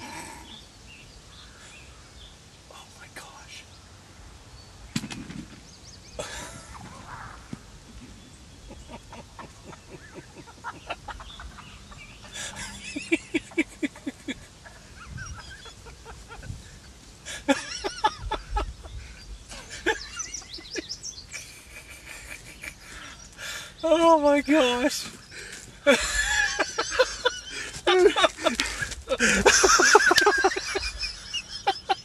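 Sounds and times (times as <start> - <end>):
wild turkey calls: 6.7 - 12.7.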